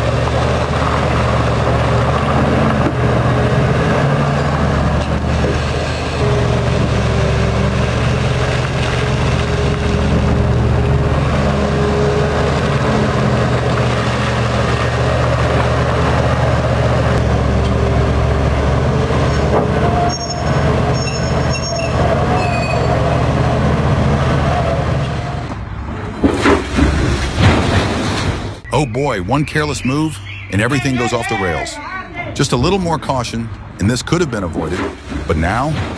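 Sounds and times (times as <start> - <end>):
diesel machinery droning: 0.0 - 27.4, 28.6 - 35.9
high-pitched squeals: 19.2 - 23.4.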